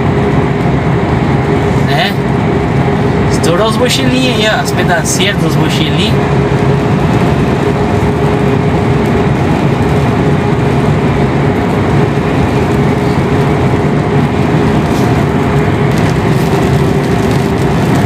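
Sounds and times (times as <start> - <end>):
constant low hum: 0.0 - 18.0
truck engine drone: 0.0 - 18.0
tyres rumbling on road: 0.0 - 18.0.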